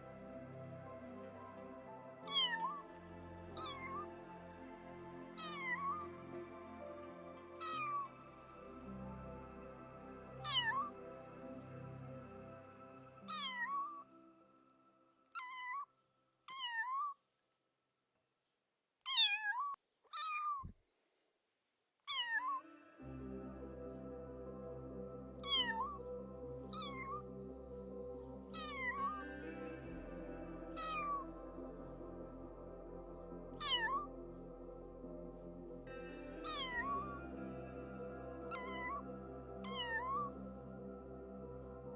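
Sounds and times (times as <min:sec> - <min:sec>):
soft background music: 0:00.0 - 0:15.8, 0:22.7 - 0:41.9
cat meowing: 0:02.3 - 0:02.8, 0:03.6 - 0:04.0, 0:05.4 - 0:06.0, 0:07.6 - 0:08.1, 0:10.4 - 0:10.9, 0:13.3 - 0:14.0, 0:15.3 - 0:15.9, 0:16.5 - 0:17.2, 0:19.1 - 0:20.7, 0:22.1 - 0:22.6, 0:26.7 - 0:27.2, 0:28.6 - 0:29.2, 0:33.6 - 0:34.0, 0:36.5 - 0:37.0, 0:39.6 - 0:40.2.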